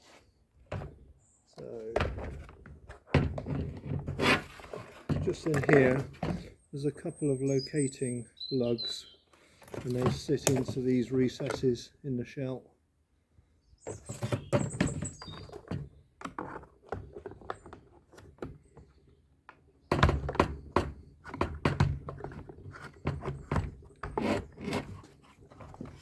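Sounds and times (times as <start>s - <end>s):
hard plastic parts knocking: 1.9s - 4.3s, 5.0s - 6.5s, 19.9s - 24.3s.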